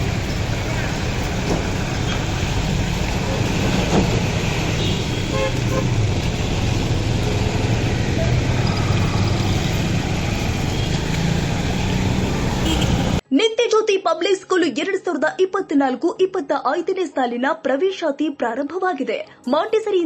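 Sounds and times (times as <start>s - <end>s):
heavy rain: 0.0s - 13.2s
road noise with engines running: 0.0s - 13.2s
car horns tooting: 3.2s - 6.0s, 12.2s - 13.2s.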